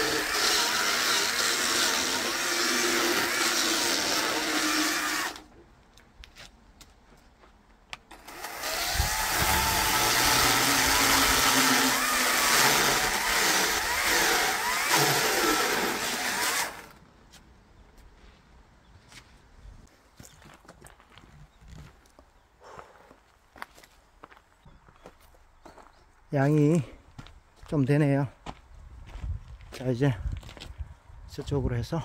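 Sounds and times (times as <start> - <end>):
chainsaw cutting logs: 0.0 - 5.5, 8.1 - 17.0.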